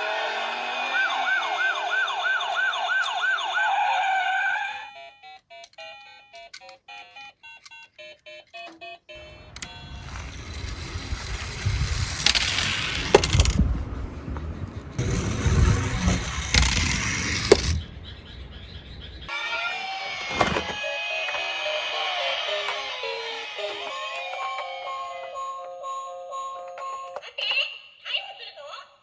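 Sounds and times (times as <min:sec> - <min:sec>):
toy siren sweeping: 0:00.6 - 0:06.6, 0:07.5 - 0:13.6, 0:15.0 - 0:17.8, 0:19.3 - 0:26.2
toy cars rolling down slope: 0:08.6 - 0:13.7, 0:15.0 - 0:17.8, 0:19.5 - 0:24.8.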